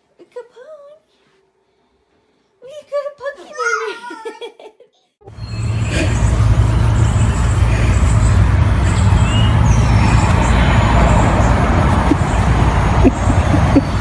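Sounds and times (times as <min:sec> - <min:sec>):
low rumbling noise: 0:05.3 - 0:14.0.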